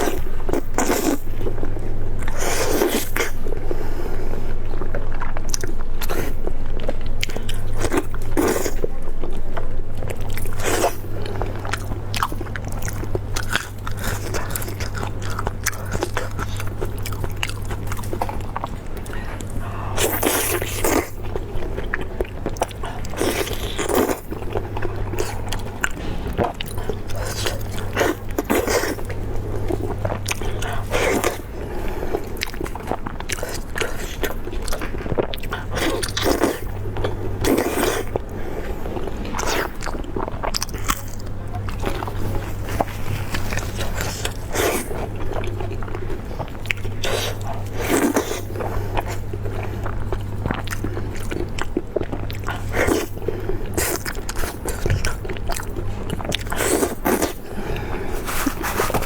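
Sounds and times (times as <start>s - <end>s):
crunchy biting and chewing: 0.0s - 59.0s
steady low hum: 0.0s - 59.0s.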